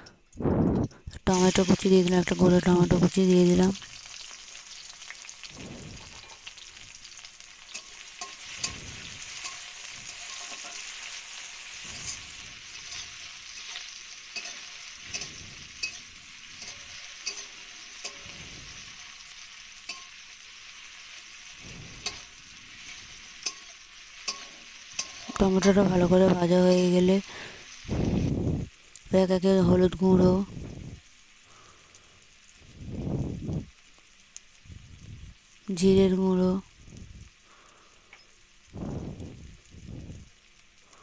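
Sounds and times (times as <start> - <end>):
tomato sizzling in hot oil: 0.0 - 41.0
spatula scraping a pan: 7.6 - 25.4
spatula clicking against pan: 16.6 - 18.3.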